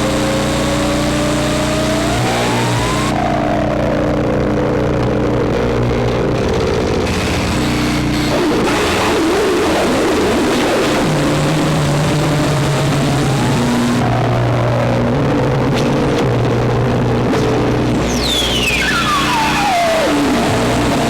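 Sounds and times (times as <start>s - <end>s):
low synthesizer drone: 0.0s - 21.0s
whistling synth pitch sliding: 18.1s - 21.0s.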